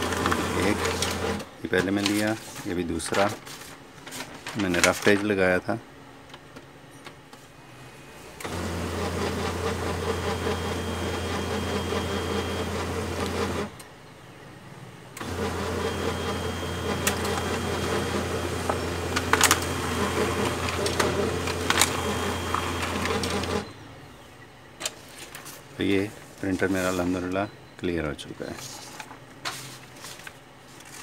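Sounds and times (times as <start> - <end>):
laser printer motor hum: 0.0 - 1.5, 7.8 - 13.8, 15.2 - 24.2
printer clicks: 0.0 - 2.2, 15.2 - 23.7.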